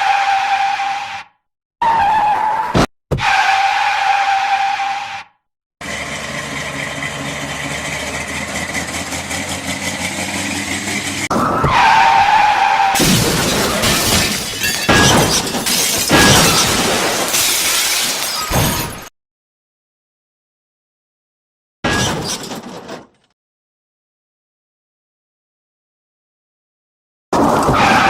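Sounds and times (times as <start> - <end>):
car engine running: 5.8 - 11.3
crashing impacts with shattering: 13.0 - 19.1.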